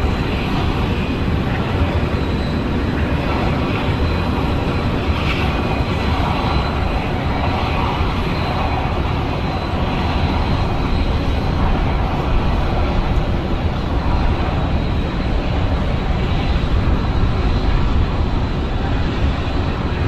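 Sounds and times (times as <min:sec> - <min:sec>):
jet airliner engines running: 0:00.0 - 0:20.0.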